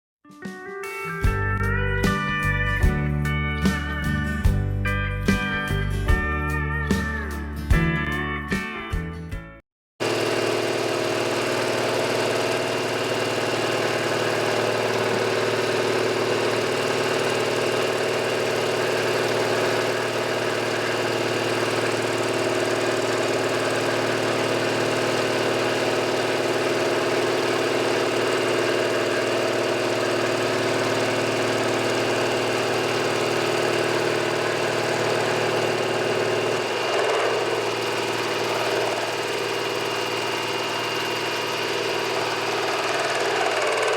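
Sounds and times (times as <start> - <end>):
machine tool motor humming: 10.0 - 43.9.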